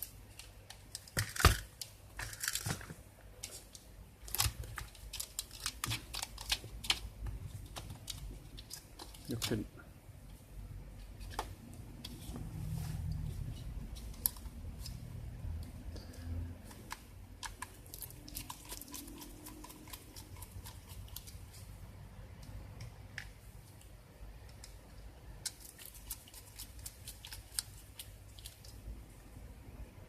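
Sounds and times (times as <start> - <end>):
laptop parts clicking and tapping: 16.6 - 21.4.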